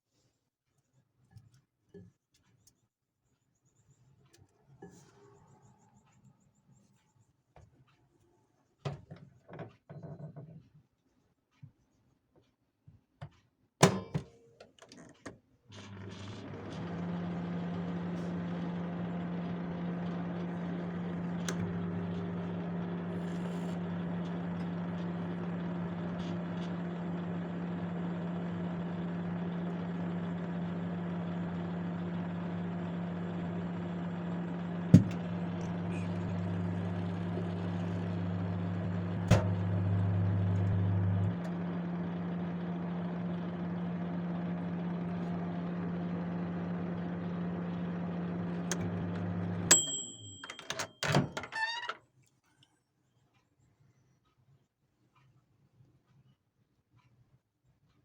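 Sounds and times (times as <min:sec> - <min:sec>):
microwave humming: 0:15.7 - 0:51.9
microwave door clicking shut: 0:38.8 - 0:39.8.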